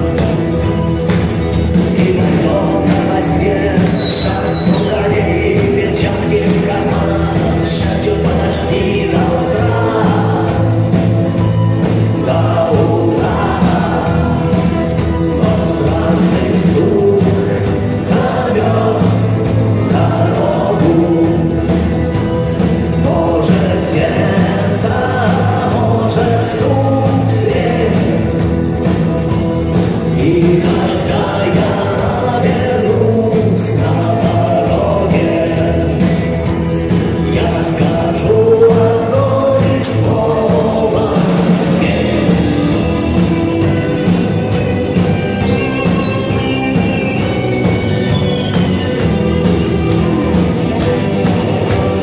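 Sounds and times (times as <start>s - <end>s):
live rock band: 0.0s - 52.0s
person singing: 1.0s - 52.0s.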